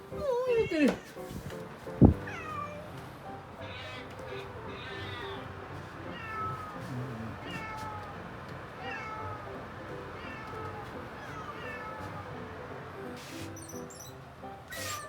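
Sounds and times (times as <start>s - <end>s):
recorded kitten meows: 0.1s - 1.0s, 6.1s - 8.2s, 8.8s - 9.5s, 10.2s - 12.4s.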